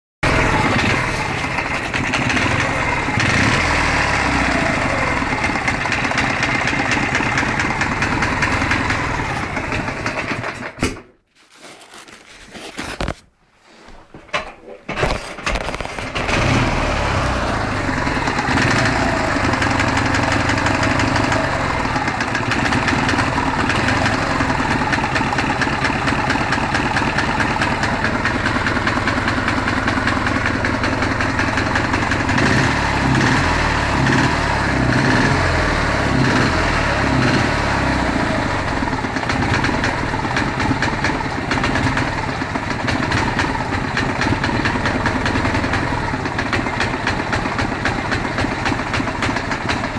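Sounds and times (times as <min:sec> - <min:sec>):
engine idling with a knock: 0:38.7 - 0:49.9.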